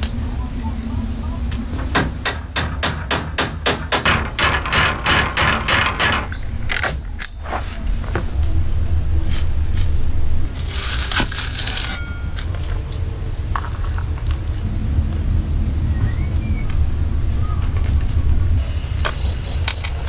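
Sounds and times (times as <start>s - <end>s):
hand tool striking: 1.9s - 7.3s.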